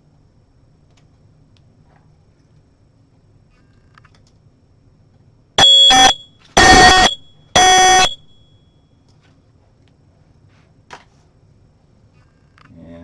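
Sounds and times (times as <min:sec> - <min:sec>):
smoke detector beeping: 0:05.6 - 0:08.2.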